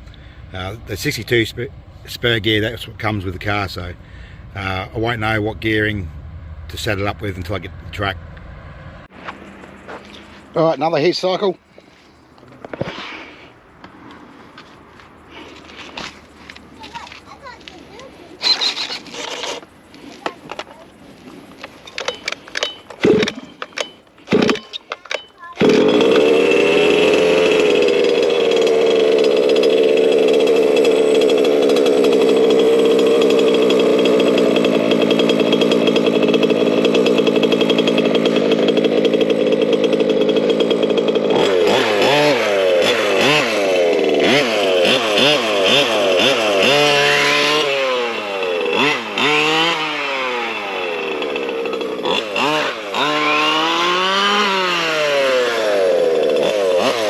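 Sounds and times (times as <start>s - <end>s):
two-stroke engine revving: 25.5s - 57.0s.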